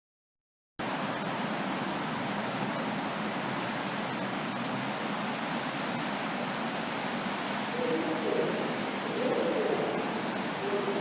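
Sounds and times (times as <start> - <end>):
steady rushing noise: 1.2 - 11.0.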